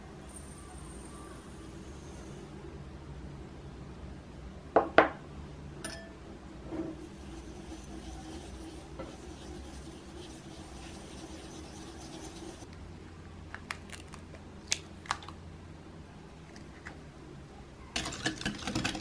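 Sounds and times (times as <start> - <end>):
soft rubbing or scraping: 6.6 - 12.7.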